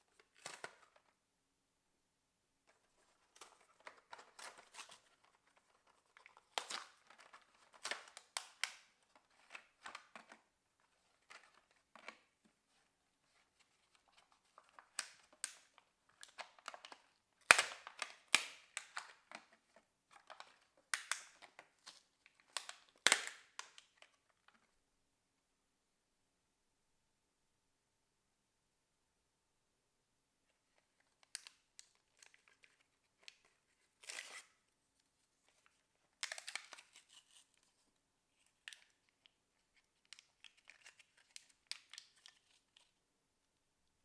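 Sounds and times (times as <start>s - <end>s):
cardboard and plastic crinkling: 2.7s - 24.6s.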